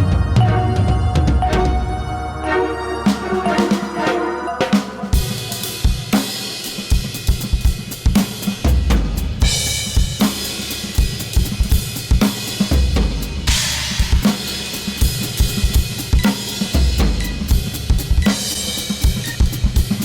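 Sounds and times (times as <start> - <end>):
steady held tones: 0.0 - 6.9
drum kit playing: 0.0 - 20.0.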